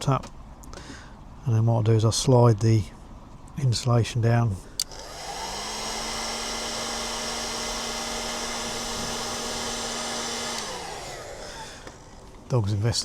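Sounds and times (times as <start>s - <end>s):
heat gun blowing hot air: 4.8s - 12.3s.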